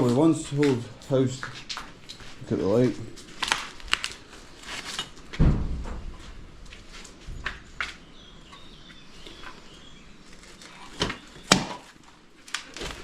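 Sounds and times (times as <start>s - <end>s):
dull thump: 5.4s - 6.2s.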